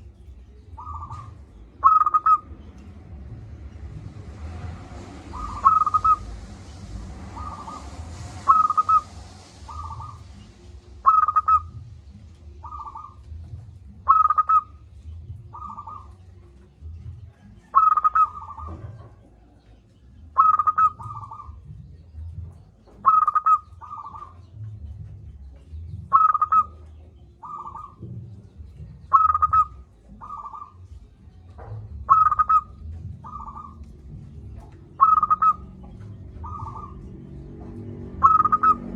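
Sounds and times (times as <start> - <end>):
dove cooing: 0.0 - 22.0, 22.6 - 38.9
low background rumble: 0.0 - 38.9.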